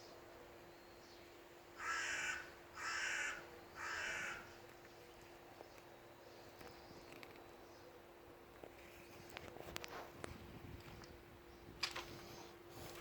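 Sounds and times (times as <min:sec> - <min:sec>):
bird calling harshly: 0:01.8 - 0:04.6.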